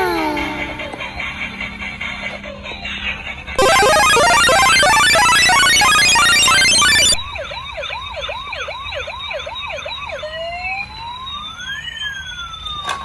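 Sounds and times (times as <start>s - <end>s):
rapid electronic beeps: 3.6s - 7.3s
toy siren warbling: 3.6s - 7.5s.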